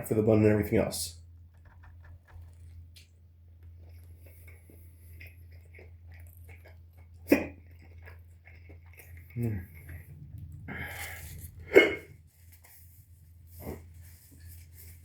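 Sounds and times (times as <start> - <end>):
low steady hum: 0.0 - 15.0
chewing and mouth noises: 2.4 - 12.8
person hiccuping: 7.2 - 7.6, 11.6 - 12.1.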